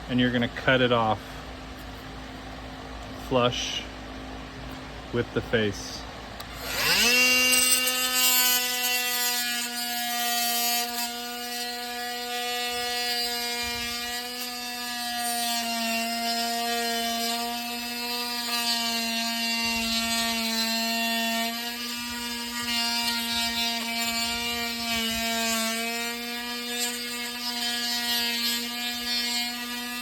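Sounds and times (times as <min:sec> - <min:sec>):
oscillating multi-tool cutting: 0:06.4 - 0:30.0.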